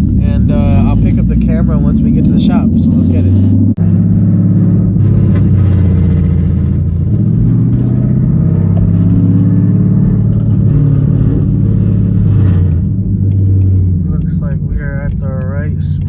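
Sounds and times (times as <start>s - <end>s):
car engine rumbling: 0.0s - 16.0s.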